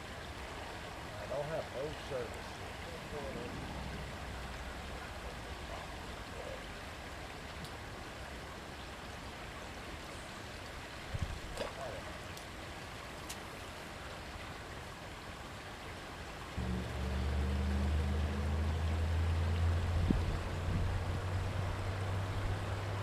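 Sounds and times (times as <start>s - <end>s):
creek water running: 0.0s - 23.0s
low rumble: 3.1s - 5.3s, 16.6s - 22.6s.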